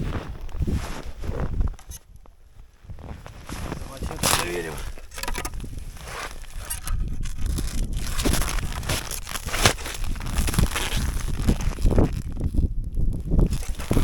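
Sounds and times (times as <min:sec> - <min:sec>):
boots crunching in snow: 0:00.0 - 0:02.0, 0:02.8 - 0:12.4
wind rumble on microphone: 0:00.0 - 0:14.0.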